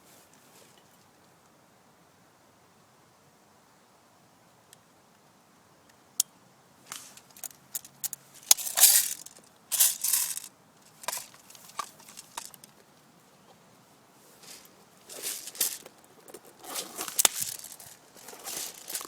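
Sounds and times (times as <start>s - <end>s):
crunching and rustling: 6.9s - 12.9s, 14.2s - 19.0s.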